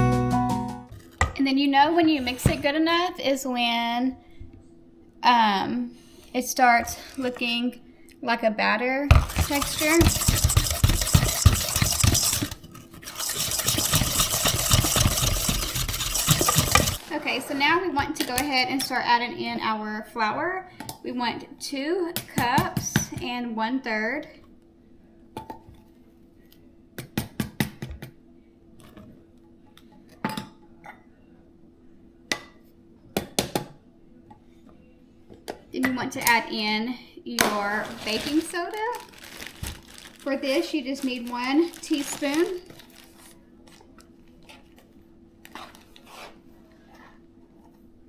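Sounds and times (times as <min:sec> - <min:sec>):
utensil scraping a mixing bowl: 0:09.2 - 0:17.2.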